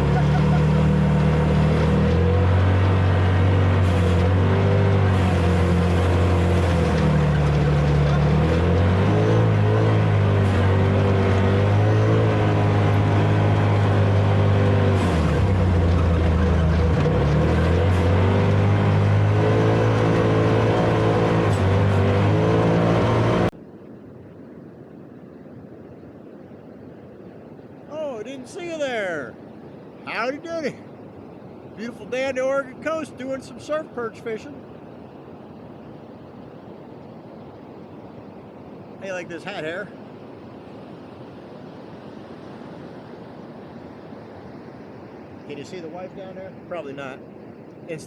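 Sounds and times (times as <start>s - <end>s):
vehicle engine running: 0.0s - 23.5s
faint steady rushing noise: 0.0s - 48.0s.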